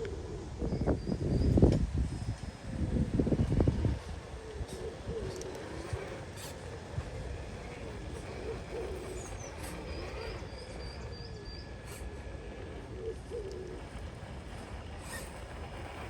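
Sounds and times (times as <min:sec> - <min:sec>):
low coo-like bird calls: 0:00.0 - 0:01.7, 0:03.9 - 0:14.2.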